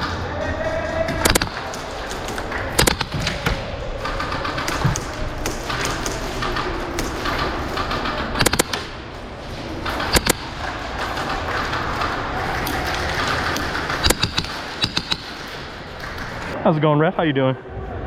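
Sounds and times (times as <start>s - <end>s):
steady background noise: 0.0s - 18.0s
airsoft guns firing bursts: 1.1s - 9.0s, 9.8s - 15.7s.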